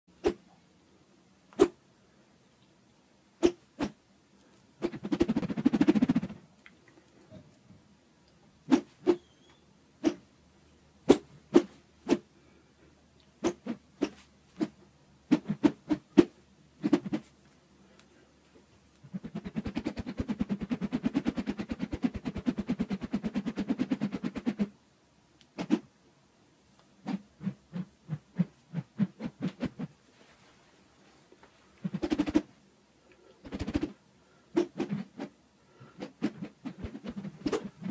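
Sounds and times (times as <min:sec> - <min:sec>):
plastic rod swishing through air: 0:00.2 - 0:00.4, 0:03.4 - 0:04.0, 0:04.8 - 0:06.4, 0:08.7 - 0:09.3, 0:10.0 - 0:10.3, 0:11.1 - 0:12.3, 0:13.4 - 0:17.4, 0:19.0 - 0:24.7, 0:25.6 - 0:25.9, 0:27.0 - 0:30.0, 0:31.8 - 0:32.5, 0:33.4 - 0:34.0, 0:34.6 - 0:37.9.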